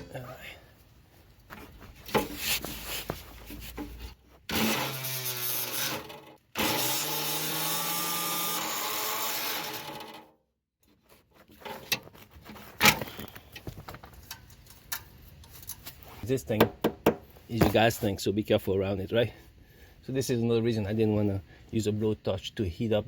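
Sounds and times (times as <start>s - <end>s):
power tool cutting metal: 4.5s - 10.2s.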